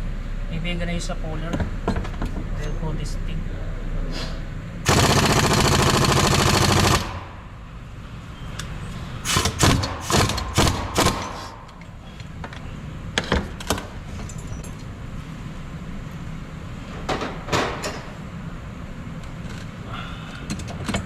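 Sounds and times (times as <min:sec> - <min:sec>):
impact wrench hammering: 0:09.2 - 0:11.8.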